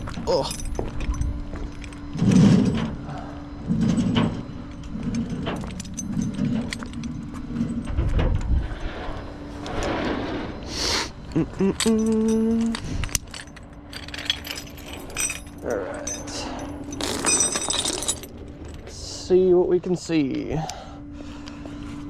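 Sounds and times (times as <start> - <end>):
chains clanking and rattling: 0.0 - 9.0, 11.5 - 19.0.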